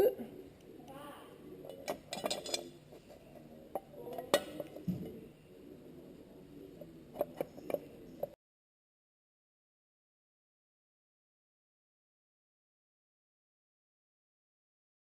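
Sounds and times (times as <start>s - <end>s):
metal tools clinking: 1.7s - 2.7s.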